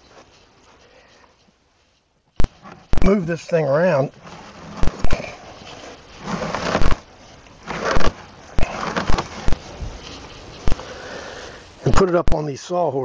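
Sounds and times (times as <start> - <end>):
wooden gate scraping: 2.6 - 10.7.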